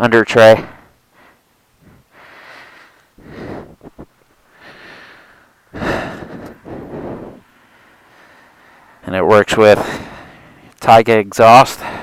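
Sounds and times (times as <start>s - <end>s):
person breathing: 0.7s - 9.0s, 9.8s - 10.8s, 11.8s - 12.0s.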